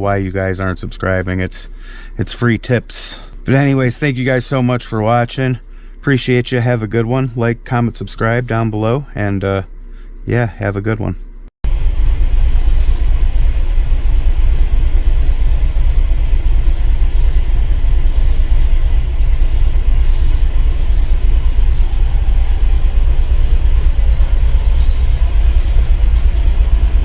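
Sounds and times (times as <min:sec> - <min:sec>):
wheel bearing humming: 0:00.0 - 0:27.0
car road and tyre noise: 0:11.7 - 0:27.0.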